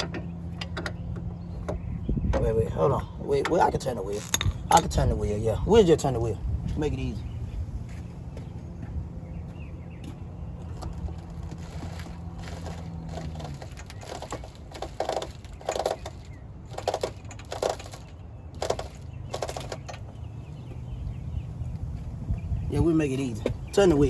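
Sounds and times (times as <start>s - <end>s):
metal clunks: 0.0s - 2.5s, 3.4s - 5.0s
scraping creaks: 0.0s - 5.0s, 10.1s - 20.9s.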